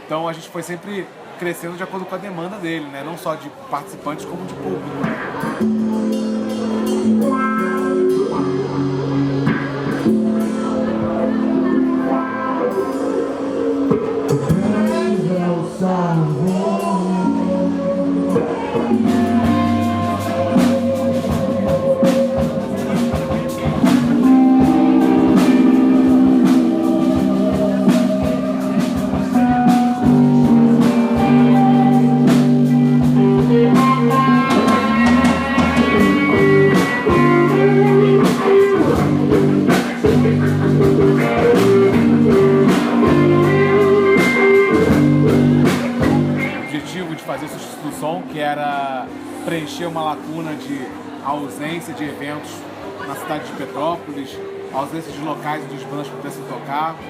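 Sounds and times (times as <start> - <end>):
bluesy rock band music: 4.5 - 46.9.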